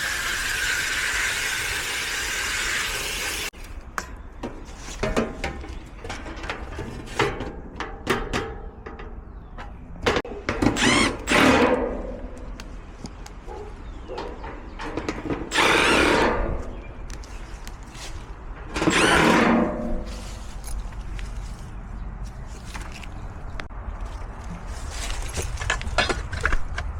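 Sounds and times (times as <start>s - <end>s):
parts knocking and clattering: 3.6s - 21.6s, 25.0s - 26.9s.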